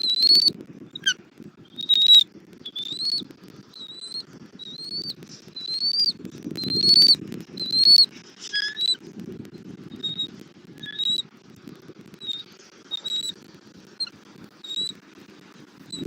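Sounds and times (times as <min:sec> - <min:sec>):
eagle calling: 0:00.1 - 0:03.2, 0:03.8 - 0:09.0, 0:10.0 - 0:11.2.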